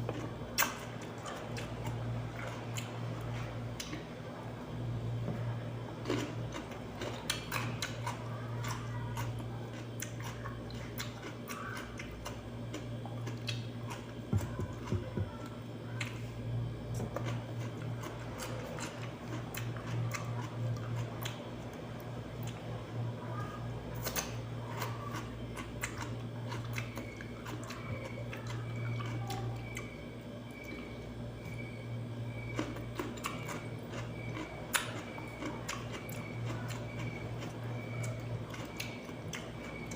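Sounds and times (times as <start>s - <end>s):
steady low hum: 0.0s - 39.9s
crisp chewing crunches: 6.0s - 15.1s, 16.9s - 21.6s, 24.0s - 30.9s, 31.5s - 39.9s.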